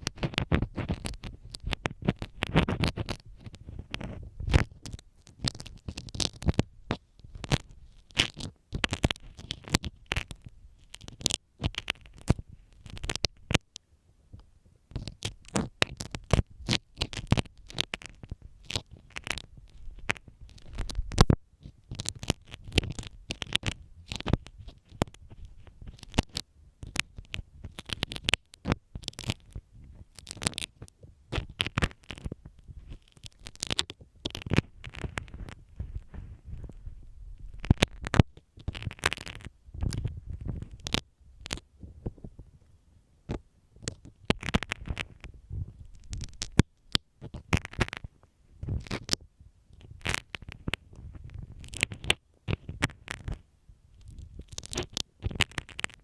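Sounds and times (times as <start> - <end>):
pin scratching and tapping microphone: 0.0 - 42.6, 43.3 - 56.0.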